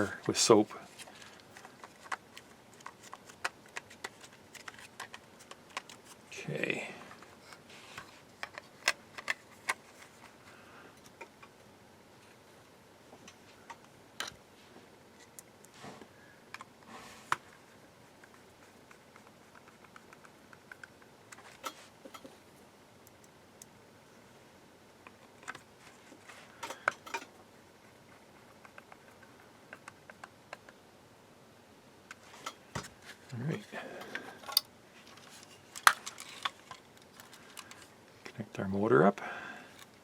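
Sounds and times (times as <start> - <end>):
plastic parts clicking: 1.0 - 6.2, 34.1 - 37.9.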